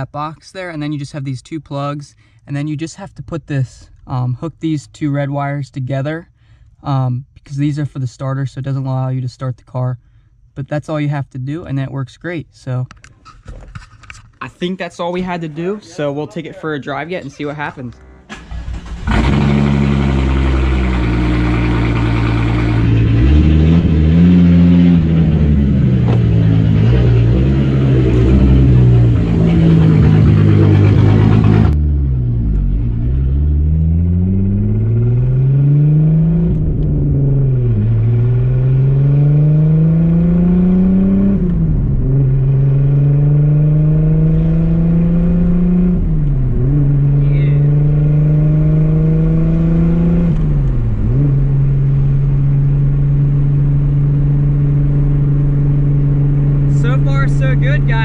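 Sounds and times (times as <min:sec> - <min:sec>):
car engine accelerating: 0:14.5 - 0:58.0.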